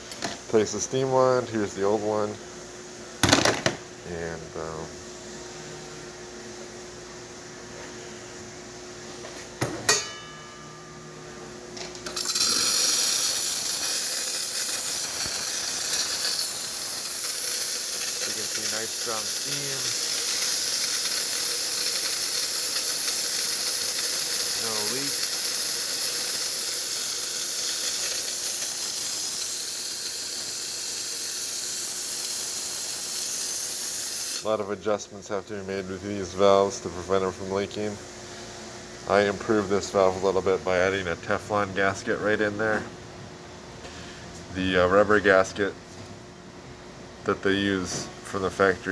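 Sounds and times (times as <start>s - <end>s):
steam wand hissing: 12.2s - 34.6s.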